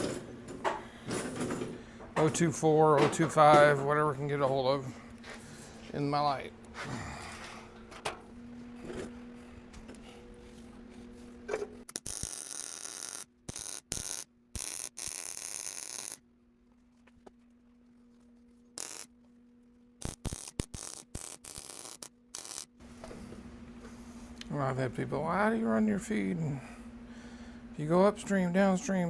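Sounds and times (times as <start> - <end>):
steady electrical hum: 0.0 - 29.0
welder arc crackling: 11.8 - 16.2, 18.8 - 19.1, 20.0 - 22.8.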